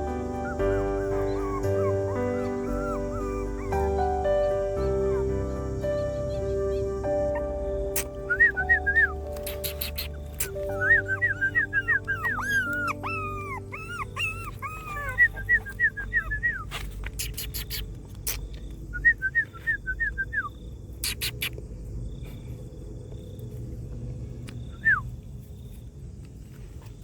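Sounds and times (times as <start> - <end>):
dog whimpering: 0.0 - 17.8
sharp clicks: 9.3 - 11.0.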